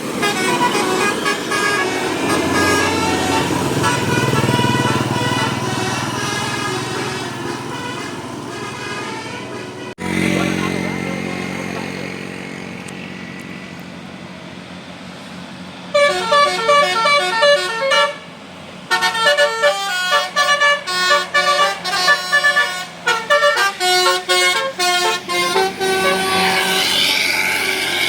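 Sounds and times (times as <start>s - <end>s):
musical bus horn playing a tune: 0.0s - 10.2s, 15.9s - 28.0s
bus engine humming: 0.0s - 28.0s.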